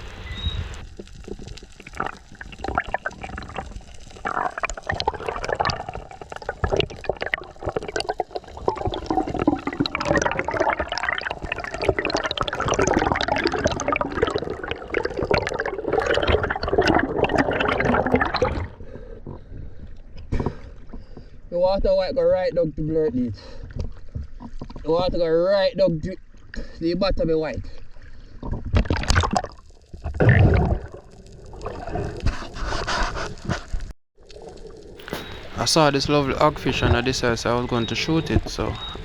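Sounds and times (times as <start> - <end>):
water gurgling underwater: 0.0 - 18.9, 28.4 - 32.5
crackling bubble clicks: 0.0 - 19.4, 28.4 - 39.0.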